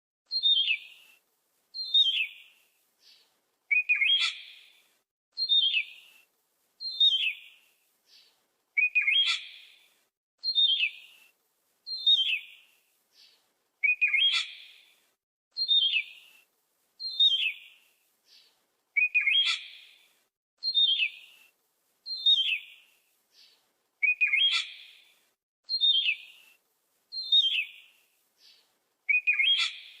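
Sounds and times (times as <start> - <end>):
bird calling with falling chirps: 3.7 - 4.6, 8.8 - 9.7, 13.8 - 14.8, 19.0 - 19.9, 22.1 - 22.7, 24.0 - 25.0, 25.7 - 26.4, 29.1 - 30.0.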